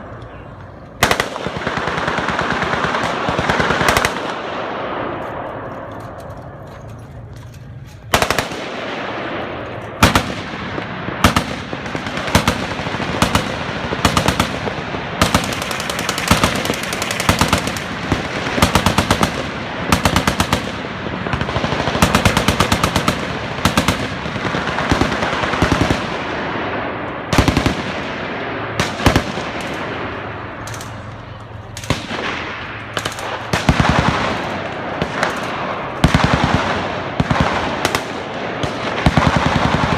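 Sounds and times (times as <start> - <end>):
machine guns firing bursts: 1.0 - 4.5, 8.0 - 9.1, 10.0 - 26.3, 27.3 - 28.0, 28.8 - 30.0, 31.8 - 39.9.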